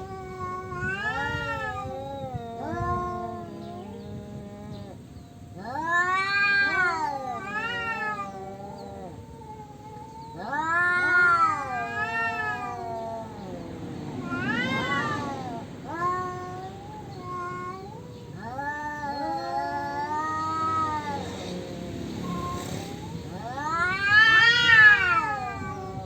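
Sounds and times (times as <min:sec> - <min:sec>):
cats yowling: 0:00.0 - 0:26.0.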